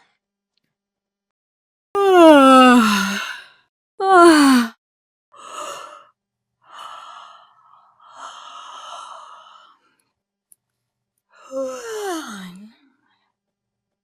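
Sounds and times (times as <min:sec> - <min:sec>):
woman yawning: 0:02.0 - 0:03.4, 0:04.0 - 0:04.7.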